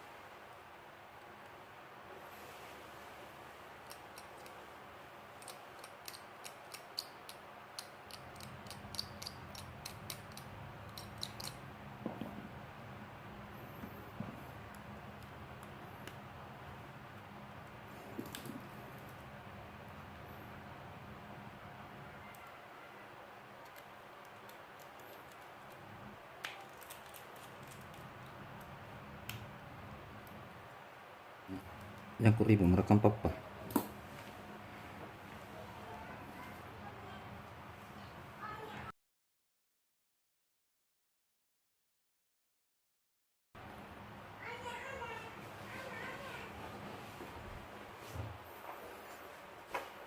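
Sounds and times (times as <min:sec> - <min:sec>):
faint steady hum: 0:00.0 - 0:38.9, 0:43.6 - 0:50.0
small tools tapping phone parts: 0:05.4 - 0:11.6.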